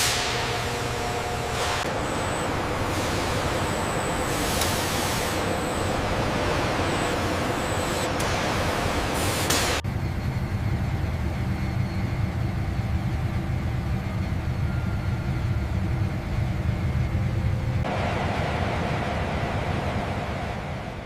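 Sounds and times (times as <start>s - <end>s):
low mechanical rumble: 9.8s - 21.0s.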